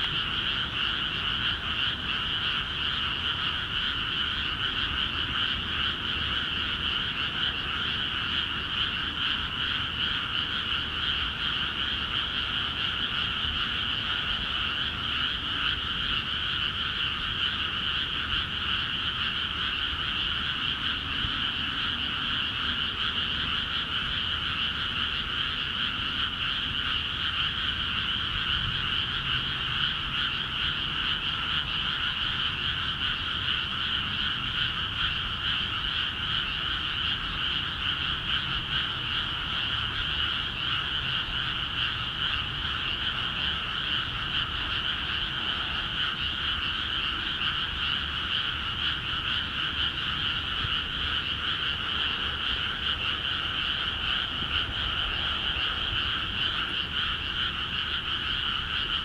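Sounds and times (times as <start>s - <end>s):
chorus of frogs calling: 0.0s - 59.0s.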